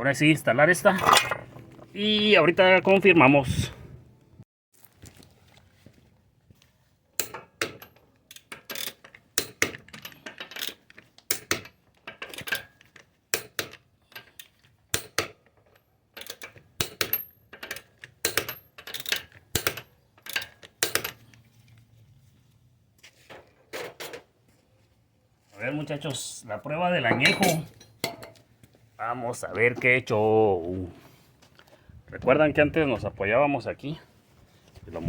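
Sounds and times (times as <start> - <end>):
metal tools clinking: 0.9 - 1.9, 27.0 - 28.4.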